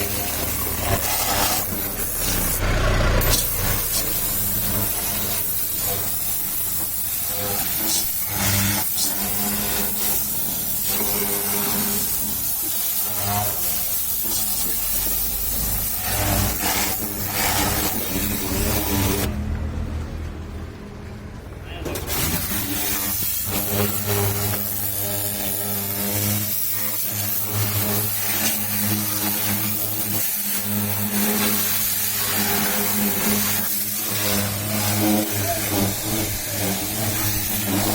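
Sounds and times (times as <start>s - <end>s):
pump motor hum: 0.0s - 8.2s
pressure washer jet hissing: 0.0s - 19.3s, 21.9s - 37.9s.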